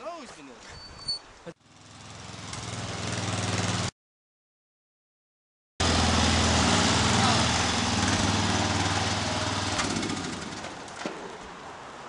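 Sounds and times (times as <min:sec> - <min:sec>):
lawn mower engine running: 0:01.6 - 0:03.9, 0:05.8 - 0:11.3.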